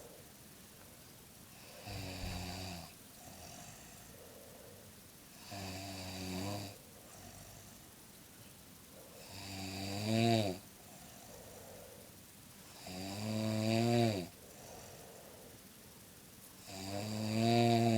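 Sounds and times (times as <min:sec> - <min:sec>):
soft breathing: 0:01.5 - 0:05.1, 0:10.7 - 0:12.8, 0:14.3 - 0:16.6
woman snoring: 0:01.6 - 0:04.4, 0:12.7 - 0:15.4, 0:16.6 - 0:17.9.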